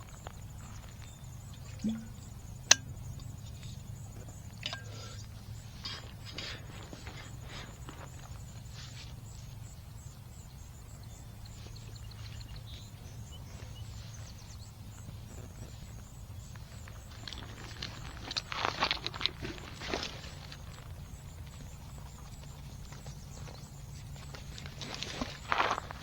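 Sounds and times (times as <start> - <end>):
footsteps on a trail: 16.6 - 26.0.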